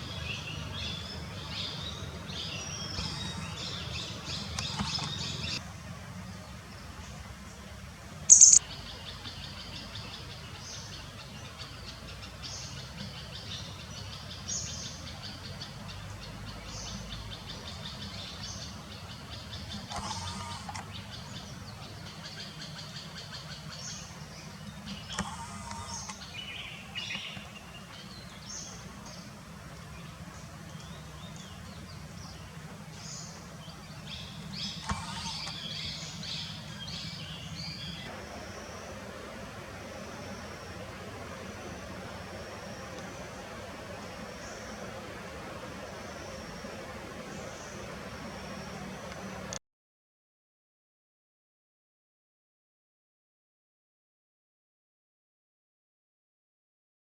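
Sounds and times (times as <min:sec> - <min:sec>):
small birds chirping: 0:00.0 - 0:05.6, 0:08.3 - 0:38.1
loud sharp bird call: 0:08.3 - 0:08.6.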